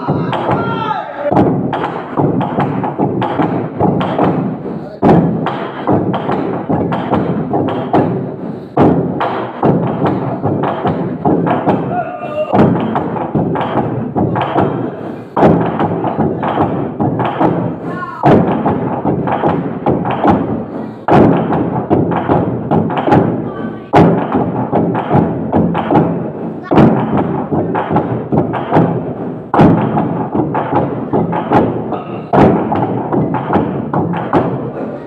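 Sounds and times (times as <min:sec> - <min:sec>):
log drum beaten with sticks: 0:00.0 - 0:35.0
person calling out: 0:11.9 - 0:12.6.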